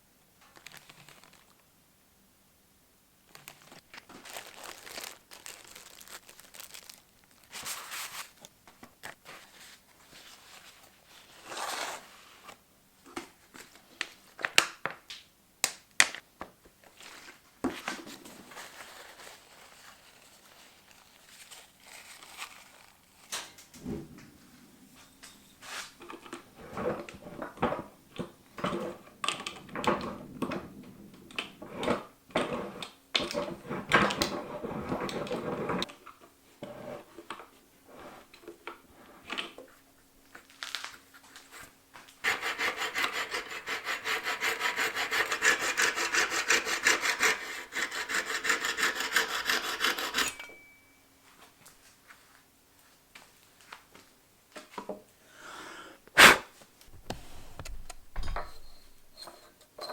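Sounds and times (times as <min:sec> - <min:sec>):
wood rasp scraping: 0:42.2 - 0:50.4.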